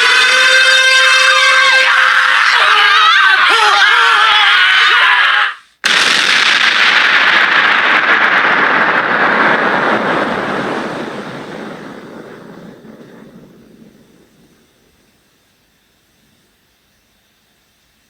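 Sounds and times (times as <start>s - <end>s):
person screaming: 0.0s - 5.8s
loud explosion with rumble: 5.8s - 15.2s.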